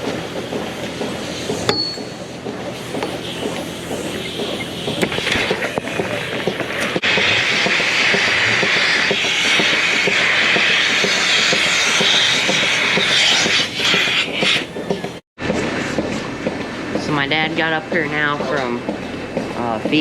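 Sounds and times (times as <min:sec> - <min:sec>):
machinery hissing: 0:00.0 - 0:15.2.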